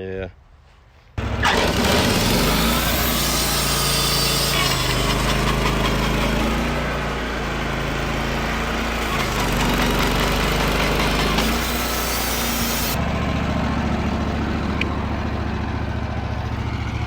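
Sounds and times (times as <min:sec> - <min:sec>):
band saw cutting log: 0:01.2 - 0:13.1
sawmill motor drone: 0:01.2 - 0:17.0.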